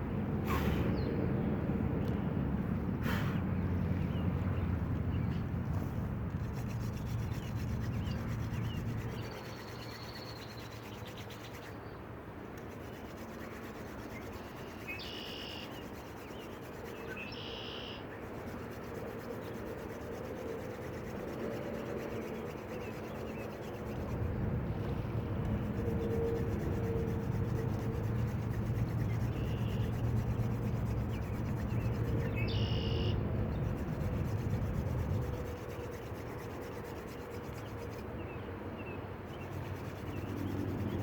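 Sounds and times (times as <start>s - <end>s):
hand drill scraping on wood: 5.8s - 11.8s, 12.6s - 17.1s, 18.2s - 32.6s, 33.5s - 38.2s, 39.3s - 41.0s.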